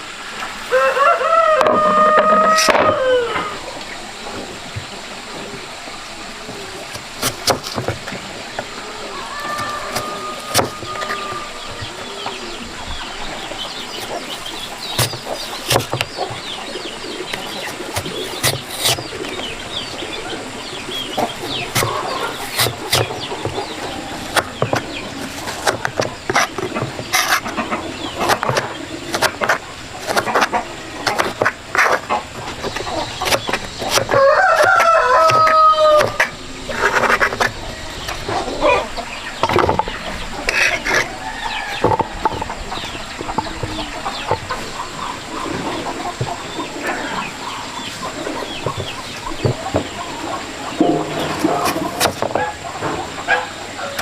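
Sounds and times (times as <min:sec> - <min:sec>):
chickens clucking: 0:00.0 - 0:54.0
rooster crowing: 0:00.7 - 0:03.8, 0:08.8 - 0:12.6, 0:34.1 - 0:36.3, 0:41.0 - 0:42.8
sharp knocks: 0:50.8 - 0:53.1.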